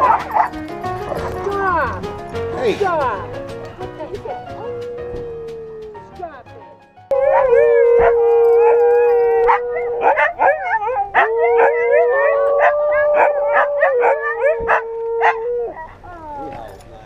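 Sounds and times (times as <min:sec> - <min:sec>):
dogs yipping and whining: 0:00.0 - 0:01.6, 0:04.4 - 0:06.1, 0:07.1 - 0:16.7
dog howling: 0:04.5 - 0:06.1, 0:07.1 - 0:16.6.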